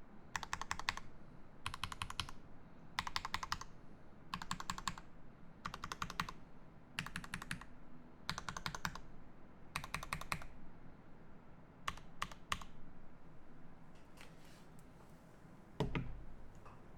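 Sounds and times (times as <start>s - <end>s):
mechanical keyboard typing: 0.4s - 1.0s, 1.6s - 2.4s, 3.0s - 3.7s, 4.3s - 5.0s, 5.6s - 6.4s, 7.0s - 7.7s, 8.3s - 9.0s, 9.8s - 10.5s, 11.9s - 12.7s.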